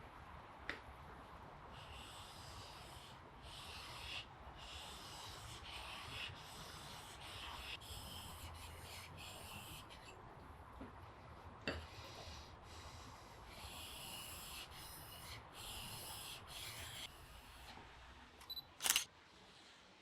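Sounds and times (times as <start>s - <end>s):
sharp click: 18.4s - 19.1s.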